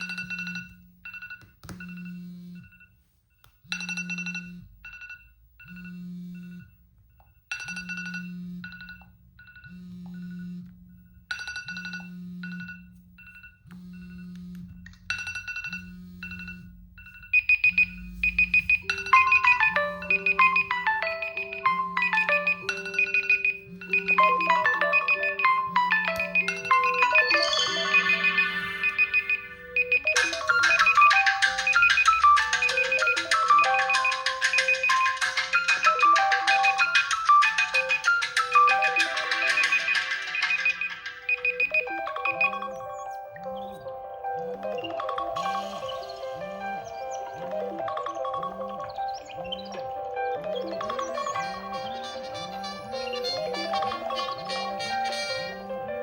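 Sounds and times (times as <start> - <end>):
melodic ringtone tune: 0.0 - 56.0
short electronic beeps: 16.3 - 36.0, 37.7 - 43.8.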